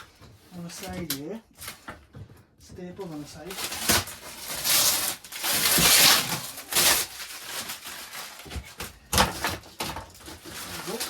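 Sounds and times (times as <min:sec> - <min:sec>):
packaging being torn: 0:03.5 - 0:08.9, 0:09.6 - 0:11.0.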